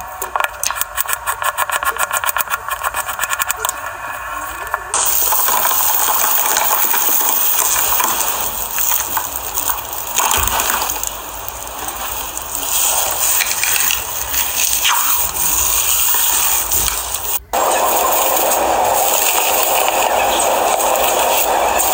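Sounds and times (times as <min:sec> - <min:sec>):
small clicks and pops: 0:00.2 - 0:03.9, 0:04.9 - 0:17.5.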